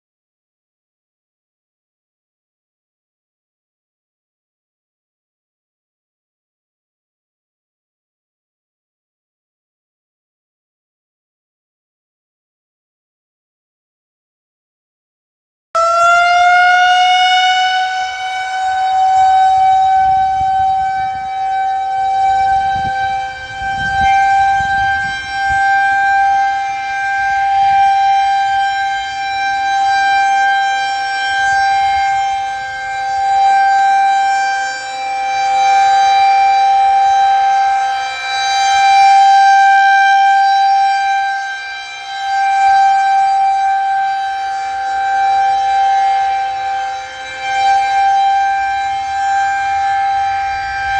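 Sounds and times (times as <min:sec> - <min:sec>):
rotating warning siren: 0:15.8 - 0:50.9.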